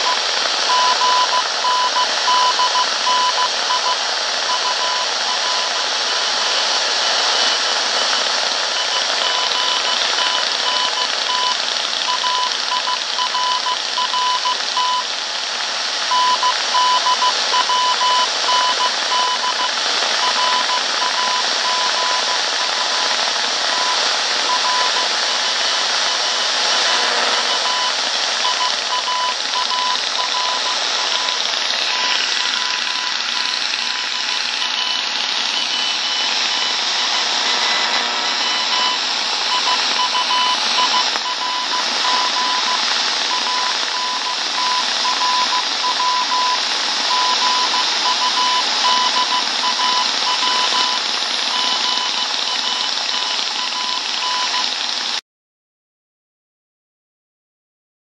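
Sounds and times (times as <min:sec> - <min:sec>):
morse code beeps: 0:00.0 - 0:06.5, 0:08.7 - 0:15.1, 0:16.1 - 0:54.7
radio static hiss: 0:00.0 - 0:54.6.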